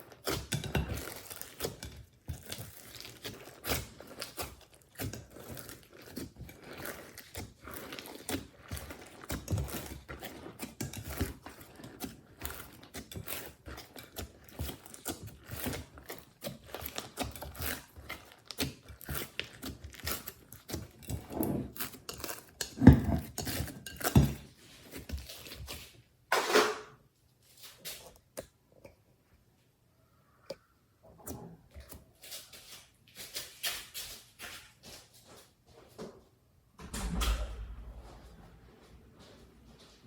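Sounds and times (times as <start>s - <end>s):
slime squelching: 0.0s - 26.0s.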